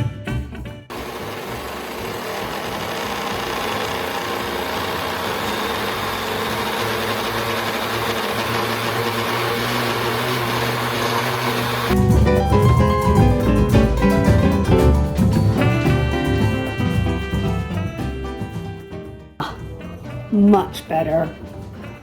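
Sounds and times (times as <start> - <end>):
electric blender motor whirring: 0.9 - 12.0.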